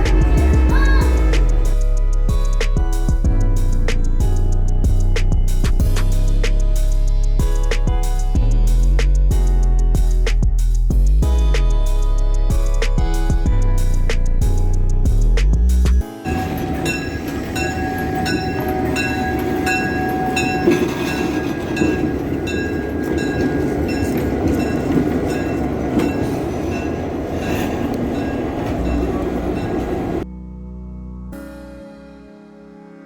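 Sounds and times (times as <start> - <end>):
train rumbling on rails: 0.0 - 30.2
wheels clicking over rail joints: 16.3 - 30.2.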